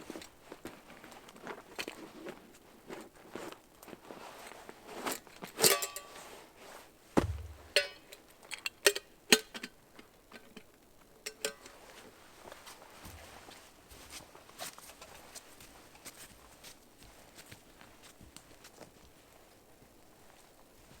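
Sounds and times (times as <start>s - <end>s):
dull low thud: 7.2s - 7.9s
metal cookware clinking: 7.4s - 8.1s.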